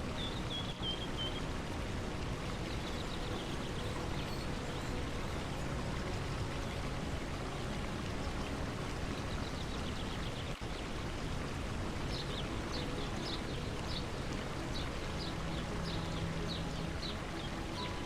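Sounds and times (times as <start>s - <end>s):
stream water running: 0.0s - 18.0s.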